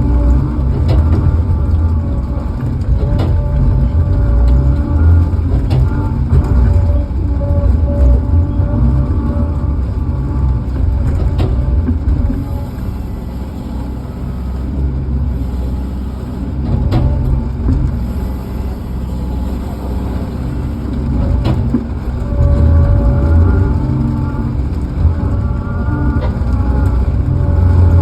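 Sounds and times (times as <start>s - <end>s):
steady whine: 0.0s - 28.0s
tractor engine rumbling: 0.0s - 28.0s.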